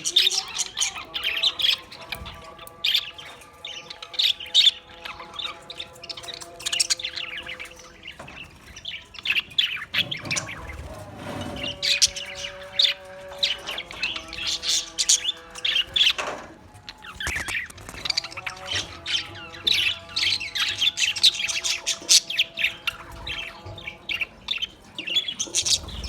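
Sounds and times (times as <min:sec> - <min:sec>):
parrots chirping and chattering: 0:00.0 - 0:26.0.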